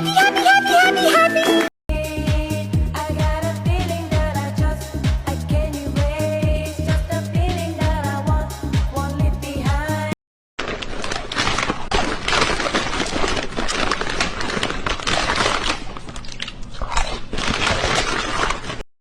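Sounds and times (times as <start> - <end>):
dense crunching and crackling: 10.6 - 18.9.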